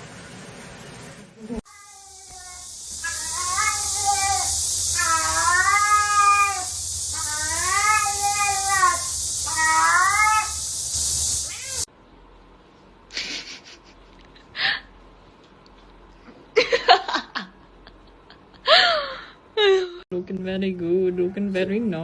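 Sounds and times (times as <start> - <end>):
background hiss: 0.0 - 11.9
cat yowling: 1.7 - 10.6, 11.4 - 11.9.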